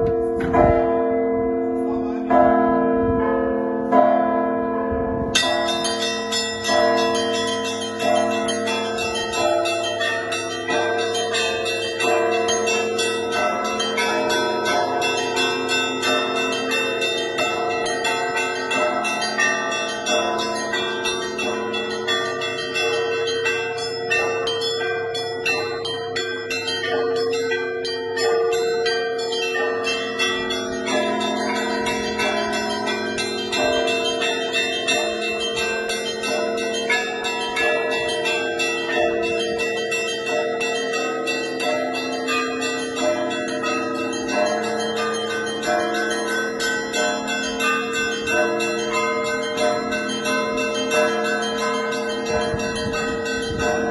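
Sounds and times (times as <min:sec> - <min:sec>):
church bells pealing: 0:00.0 - 0:53.9.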